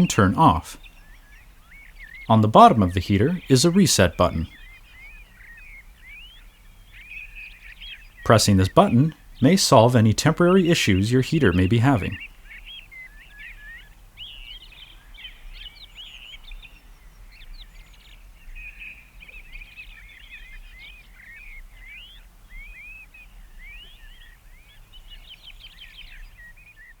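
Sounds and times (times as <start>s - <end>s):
faint low hum: 0.0s - 0.8s, 2.3s - 4.5s
birds chirping: 0.0s - 16.8s.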